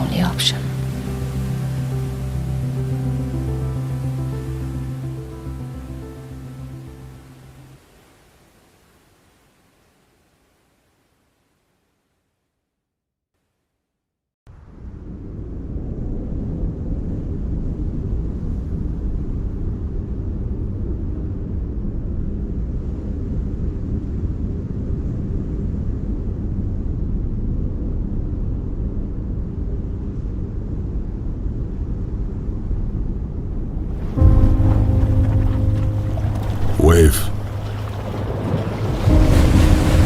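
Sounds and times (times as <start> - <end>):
deep rumble: 0.0 - 7.3, 32.5 - 40.0.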